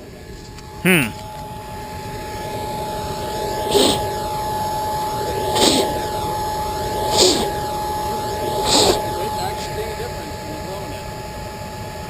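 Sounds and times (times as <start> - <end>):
furnace burning with a roar: 0.0 - 12.0.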